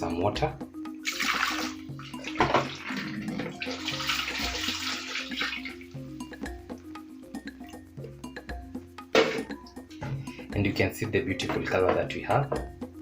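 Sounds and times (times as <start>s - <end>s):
background music with steady beat: 0.0s - 13.0s
water splashing into blender jar: 1.0s - 5.8s.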